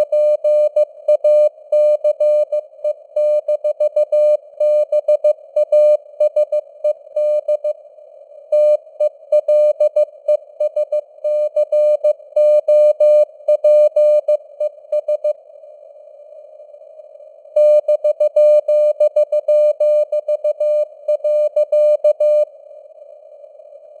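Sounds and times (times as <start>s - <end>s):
morse code tone: 9.4s - 15.3s, 17.6s - 22.4s.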